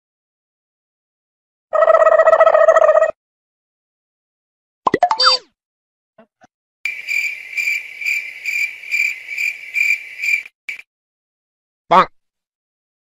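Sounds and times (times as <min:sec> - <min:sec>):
cricket chirping: 0:06.9 - 0:10.8.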